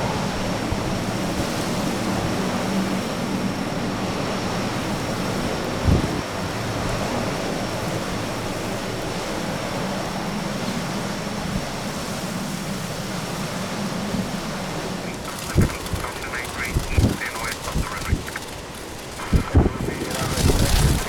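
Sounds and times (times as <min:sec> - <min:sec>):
wind on microphone: 0:00.0 - 0:08.4, 0:14.0 - 0:21.0
aircraft engines droning: 0:00.0 - 0:21.0.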